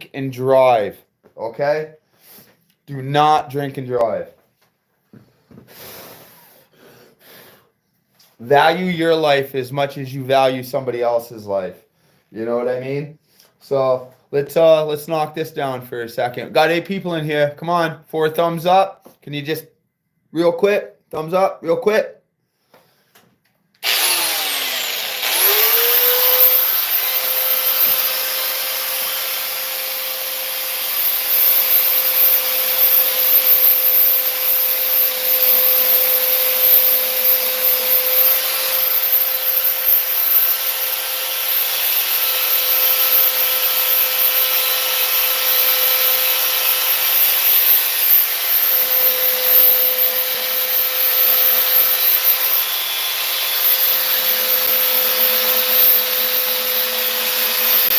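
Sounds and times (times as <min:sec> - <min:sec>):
electric sander whining: 0:23.8 - 0:33.4, 0:34.2 - 0:57.9.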